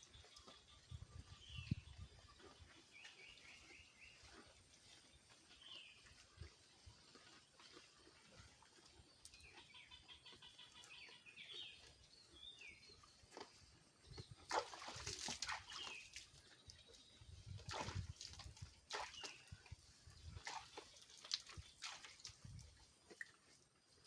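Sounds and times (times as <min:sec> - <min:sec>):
rustling or splashing: 0:13.0 - 0:24.0.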